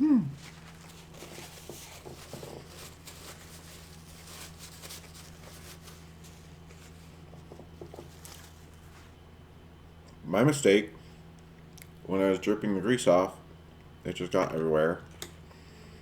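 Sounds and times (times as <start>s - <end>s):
low electrical hum: 0.0s - 16.0s
small clicks and crinkles: 0.4s - 9.2s.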